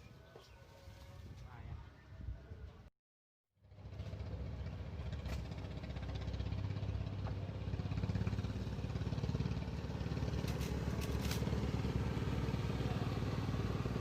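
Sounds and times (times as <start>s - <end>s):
small engine running: 3.6s - 14.0s.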